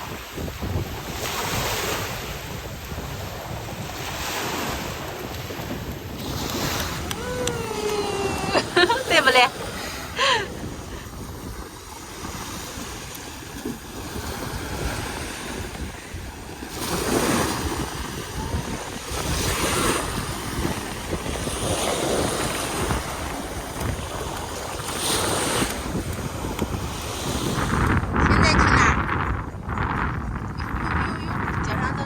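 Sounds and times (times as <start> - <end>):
ocean surf washing in: 0.0 - 28.8
wind buffeting microphone: 0.0 - 32.0.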